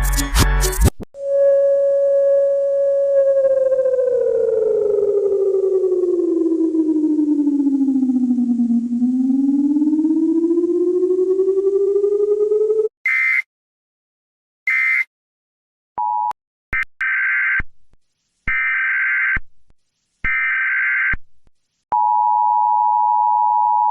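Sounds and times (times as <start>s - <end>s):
rising electronic tone: 1.2s - 12.9s.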